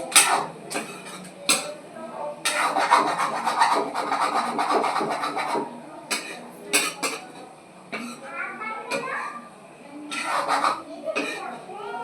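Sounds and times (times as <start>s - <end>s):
spoon scraping in cooking pan: 2.5s - 8.3s, 10.1s - 11.5s.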